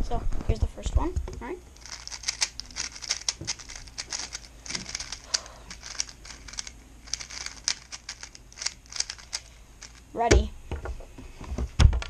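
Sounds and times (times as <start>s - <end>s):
puzzle cube plastic clicks: 1.8s - 10.0s.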